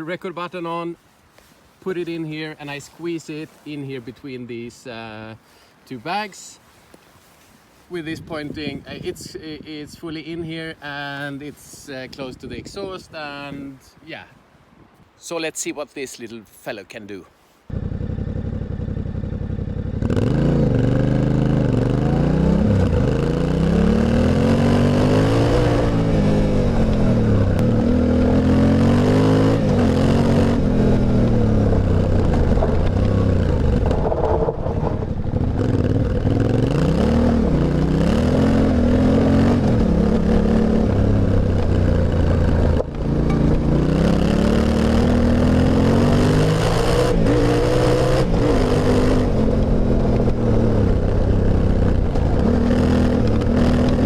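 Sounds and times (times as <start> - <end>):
motorcycle exhaust revving: 17.7 - 54.0.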